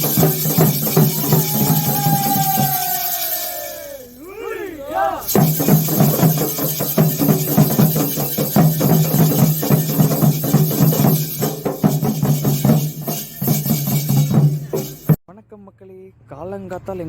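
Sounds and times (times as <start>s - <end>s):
fast dense drum strokes: 5.2s - 15.2s.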